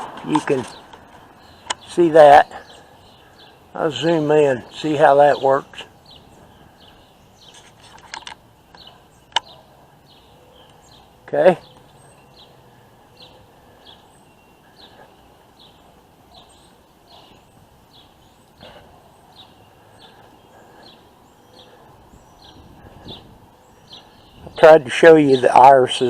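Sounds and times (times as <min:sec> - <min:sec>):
bird chirping: 0:00.0 - 0:26.0
faint outdoor background noise: 0:00.0 - 0:26.0.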